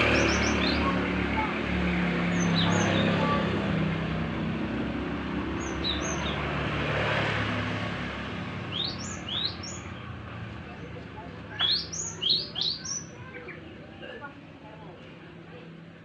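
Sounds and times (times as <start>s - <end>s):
songbird chirping: 0.0s - 1.4s, 2.1s - 3.5s, 5.5s - 6.6s, 8.7s - 13.9s
vehicle engine hum: 0.0s - 11.6s.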